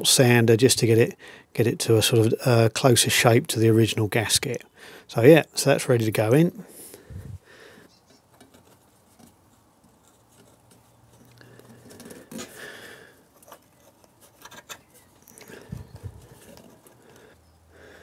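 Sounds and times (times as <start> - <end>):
small metal parts clicking: 13.3 - 17.2.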